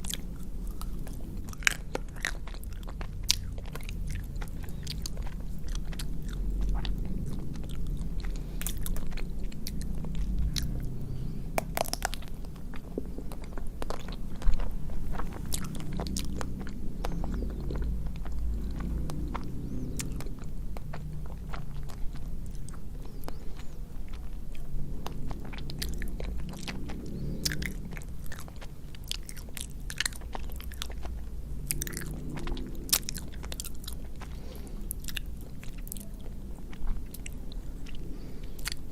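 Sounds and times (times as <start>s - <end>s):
wet chewing: 0.0s - 38.9s
chocolate shell cracking: 11.6s - 12.4s.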